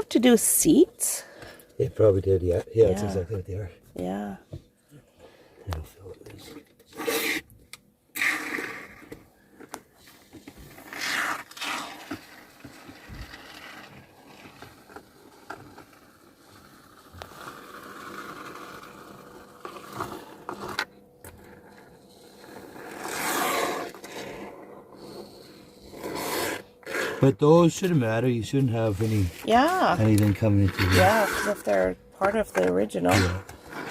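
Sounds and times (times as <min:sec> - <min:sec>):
scraping on metal floor: 0:22.4 - 0:27.2.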